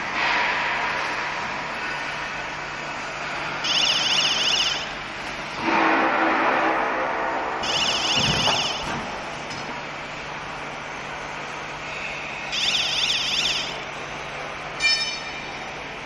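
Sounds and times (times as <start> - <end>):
low machine hum: 0.0 - 16.0
warbling electronic alarm: 3.6 - 5.0, 7.6 - 9.0, 12.5 - 13.9.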